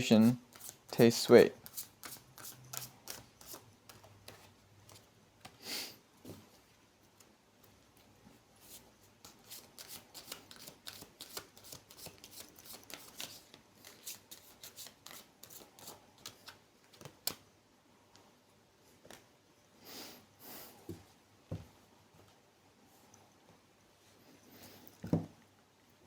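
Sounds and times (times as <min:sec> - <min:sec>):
cards being shuffled: 0:00.5 - 0:05.6, 0:08.6 - 0:17.4.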